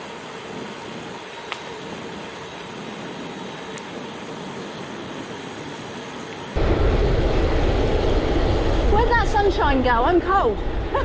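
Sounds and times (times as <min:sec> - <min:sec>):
bicycle tyre rolling: 0:00.0 - 0:11.0
deep wind rumble: 0:06.5 - 0:11.0.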